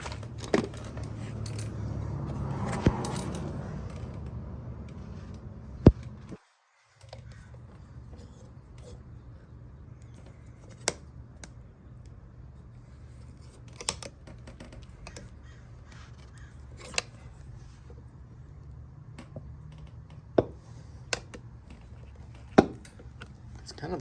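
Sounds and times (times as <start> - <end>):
low steady hum: 7.0 - 24.0.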